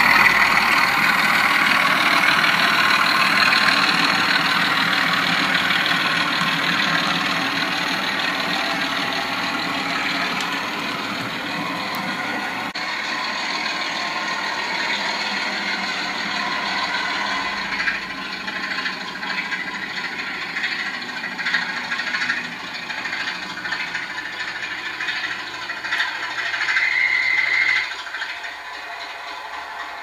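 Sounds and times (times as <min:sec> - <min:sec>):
model locomotive diesel engine sound: 0:00.0 - 0:30.0
model train rattling on track: 0:00.0 - 0:30.0.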